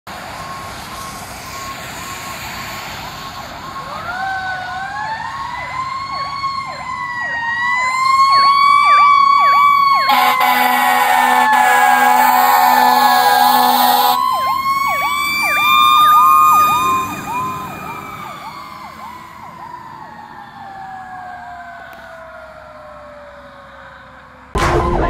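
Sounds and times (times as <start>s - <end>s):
electronic siren yelping: 3.8s - 21.1s
air horn blast: 10.1s - 14.2s.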